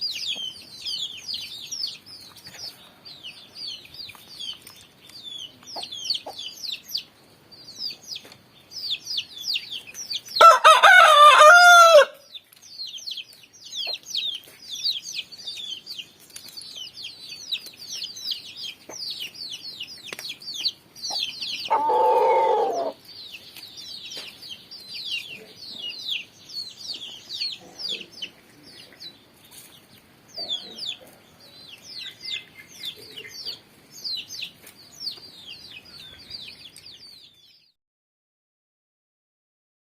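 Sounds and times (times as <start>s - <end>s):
rooster crowing: 10.4s - 12.2s, 21.7s - 23.0s
low fowl call: 21.7s - 23.0s.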